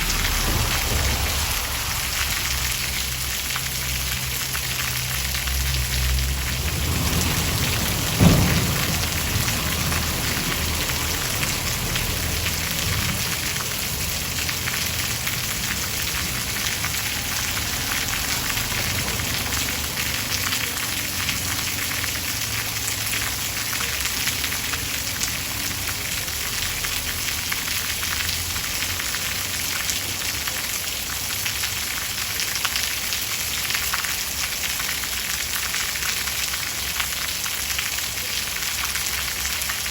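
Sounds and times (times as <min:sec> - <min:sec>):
thunderclap and rumble: 0:00.0 - 0:20.5
heavy rain falling: 0:00.0 - 0:39.9.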